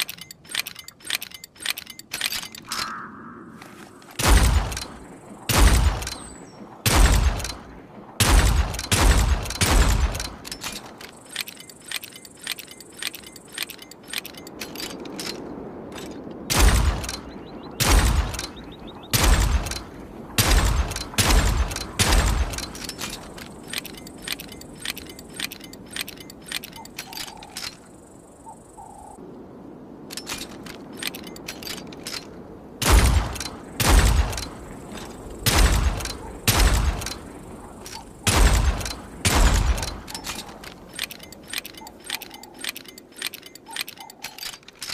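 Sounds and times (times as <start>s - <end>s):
revolver gunshots: 4.2s - 10.4s, 16.5s - 22.8s, 35.4s - 37.3s, 38.2s - 40.4s.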